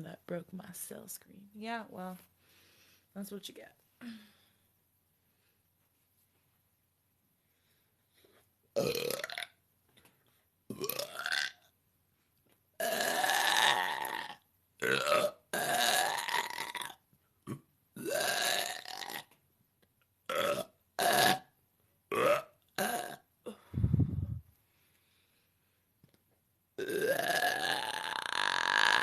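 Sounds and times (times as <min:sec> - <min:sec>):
woman belching: 0:08.8 - 0:09.5, 0:10.7 - 0:11.6, 0:12.8 - 0:19.3, 0:20.3 - 0:21.5, 0:22.1 - 0:23.2, 0:26.8 - 0:29.0.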